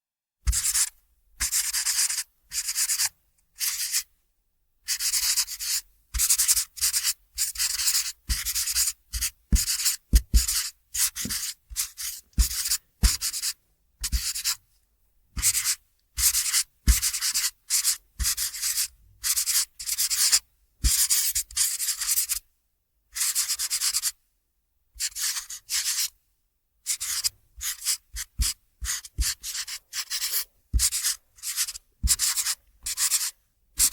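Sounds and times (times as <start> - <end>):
marker squeaking on paper: 0.5 - 4.0, 6.4 - 14.6, 16.3 - 22.4, 25.0 - 26.1, 26.9 - 33.9
marker tip tapping: 11.2 - 13.4, 27.2 - 33.3.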